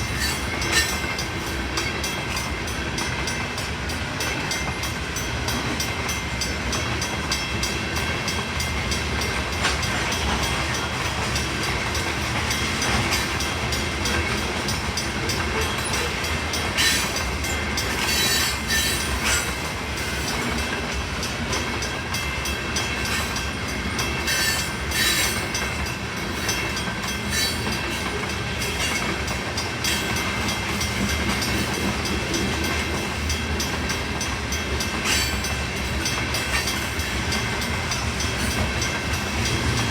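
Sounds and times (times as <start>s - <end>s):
train wheels clattering on rails: 0.0s - 39.9s.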